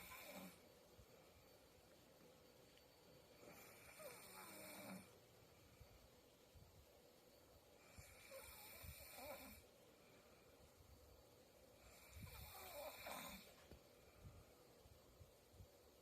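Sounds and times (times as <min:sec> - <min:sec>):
woman snoring faintly: 0:00.0 - 0:00.6, 0:03.4 - 0:05.2, 0:07.8 - 0:09.7, 0:11.8 - 0:13.6.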